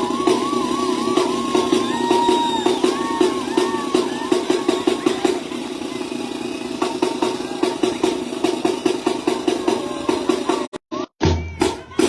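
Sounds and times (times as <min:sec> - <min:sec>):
brass band playing: 0:00.0 - 0:10.8.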